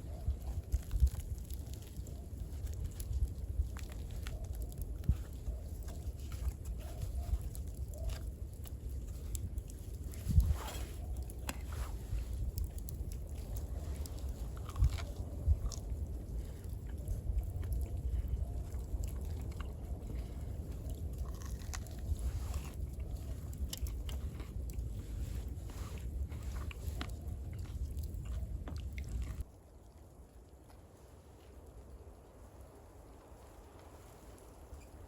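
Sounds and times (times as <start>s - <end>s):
person chewing crunchy food: 0.3s - 29.5s.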